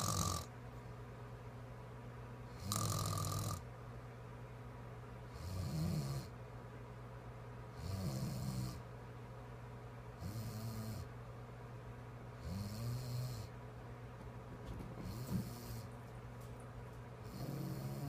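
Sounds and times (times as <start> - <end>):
woman snoring: 0.0 - 0.5, 2.5 - 3.6, 5.3 - 6.3, 12.4 - 13.5, 17.3 - 18.0.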